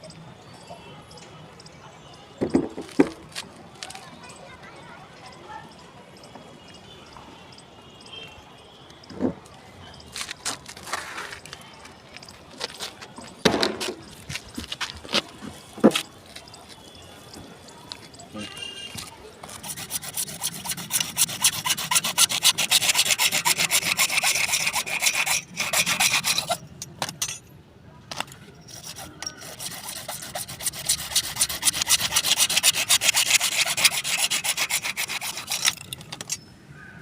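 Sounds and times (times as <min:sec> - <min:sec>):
hacksaw sawing through pipe: 0:19.4 - 0:26.6, 0:28.7 - 0:36.4.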